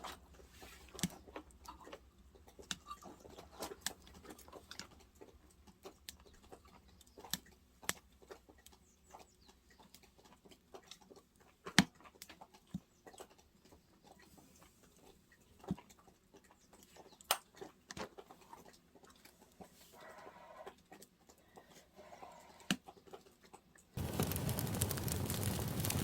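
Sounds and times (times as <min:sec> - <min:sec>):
sharp pops of fire: 0:24.0 - 0:26.0
wood fire crackling: 0:24.0 - 0:26.0.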